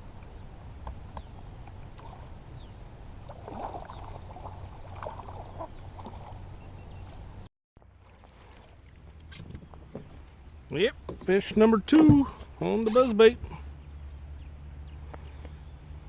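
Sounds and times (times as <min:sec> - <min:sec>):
water lapping: 0:03.2 - 0:10.6.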